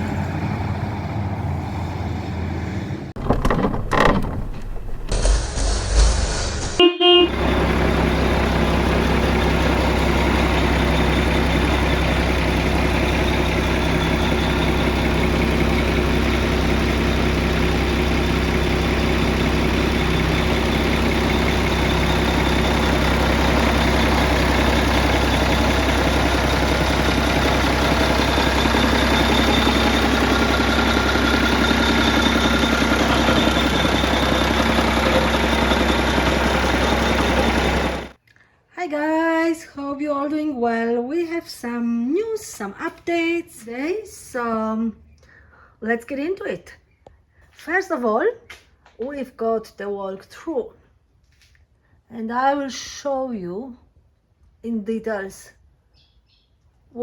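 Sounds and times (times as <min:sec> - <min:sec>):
truck engine idling: 0:00.0 - 0:38.2.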